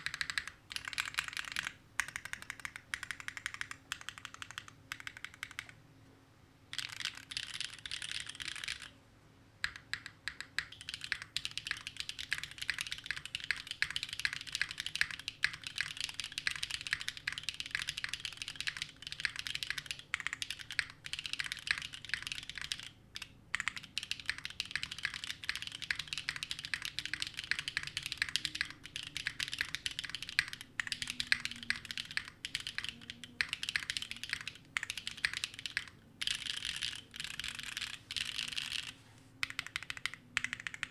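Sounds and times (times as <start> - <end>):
fast typing on mechanical keyboard: 0.0 - 5.8, 6.7 - 8.9, 9.6 - 40.9.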